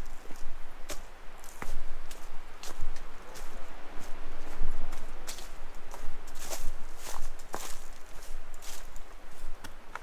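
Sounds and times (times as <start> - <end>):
footsteps on rocky trail: 4.4 - 10.0.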